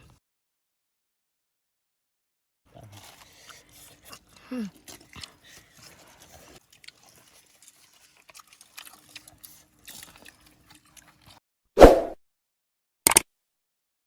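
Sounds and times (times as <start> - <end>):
chewing and crunching food: 2.7 - 11.4.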